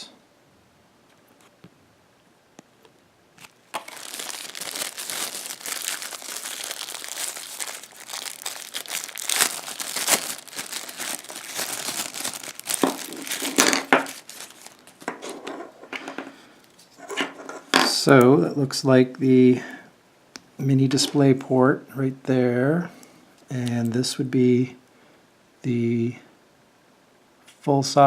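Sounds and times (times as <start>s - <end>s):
packaging crinkling and rustling: 3.4s - 15.8s.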